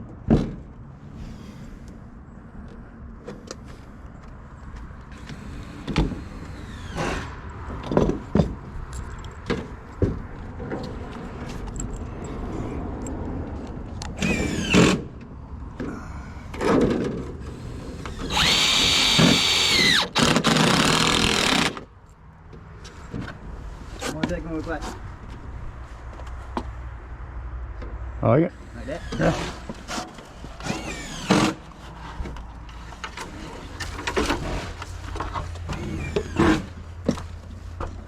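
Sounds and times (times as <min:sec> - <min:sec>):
power drill driving screws: 0:05.1 - 0:07.4, 0:14.2 - 0:15.0, 0:17.5 - 0:21.9, 0:28.6 - 0:31.7, 0:35.8 - 0:36.7.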